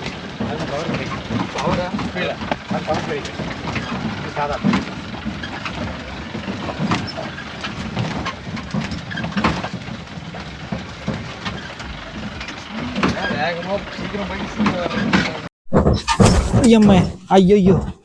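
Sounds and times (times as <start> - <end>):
jeep engine running: 0.0 - 18.0
vehicle knocks and rattles: 0.0 - 18.0.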